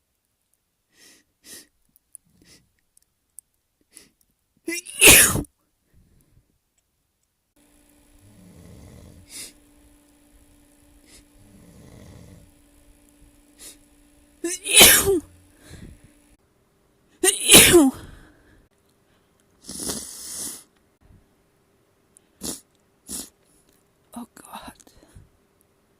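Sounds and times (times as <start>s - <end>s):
person sniffing: 0.9s - 1.7s, 2.3s - 2.7s, 5.0s - 5.4s, 8.3s - 9.6s, 11.0s - 12.4s, 13.6s - 13.8s, 19.6s - 20.7s, 22.3s - 23.4s
person sneezing: 4.7s - 5.5s, 14.5s - 15.8s, 17.2s - 18.2s, 19.6s - 20.7s, 22.4s - 23.4s.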